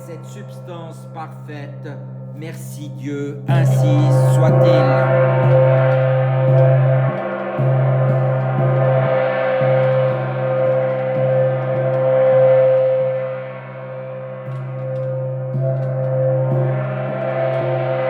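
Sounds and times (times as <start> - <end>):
gong struck with a mallet: 3.4 - 18.0.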